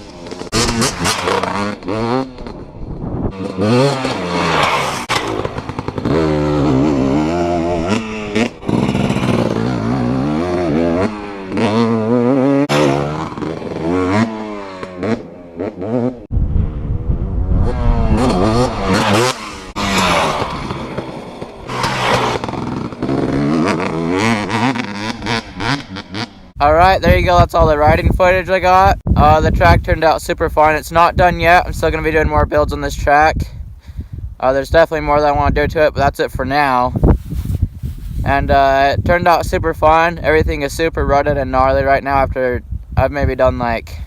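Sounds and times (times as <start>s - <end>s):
low rumble: 0.0s - 15.4s, 16.2s - 32.4s
dirt bike engine revving: 0.0s - 26.6s.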